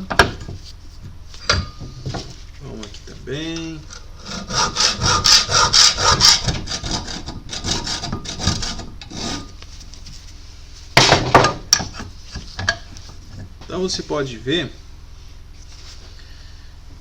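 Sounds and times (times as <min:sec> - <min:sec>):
hacksaw scraping steel: 0:04.0 - 0:09.6.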